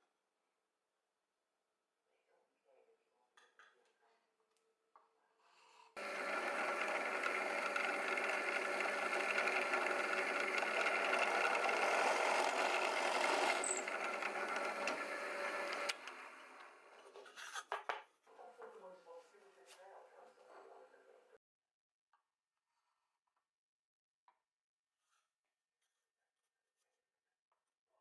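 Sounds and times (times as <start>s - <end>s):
electric drill boring wood: 6.0s - 17.0s.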